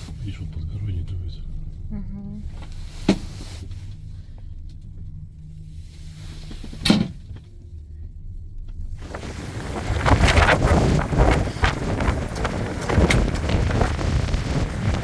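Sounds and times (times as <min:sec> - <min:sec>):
low rumble: 0:00.0 - 0:15.0
wind buffeting microphone: 0:08.9 - 0:15.0.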